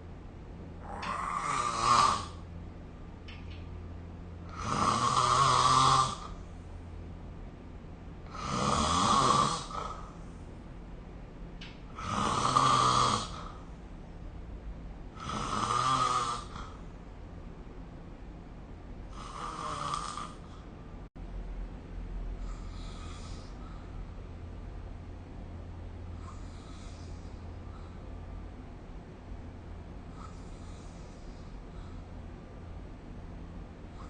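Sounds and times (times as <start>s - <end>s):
person snoring: 0.8s - 2.5s, 4.5s - 6.4s, 8.2s - 10.2s, 12.0s - 13.7s, 15.1s - 16.8s, 19.1s - 20.6s, 22.4s - 23.9s.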